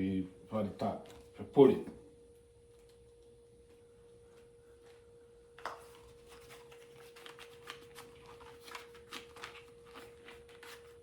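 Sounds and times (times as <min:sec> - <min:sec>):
faint hum tone: 0:00.0 - 0:11.0
plastic packaging crackling: 0:06.3 - 0:11.0.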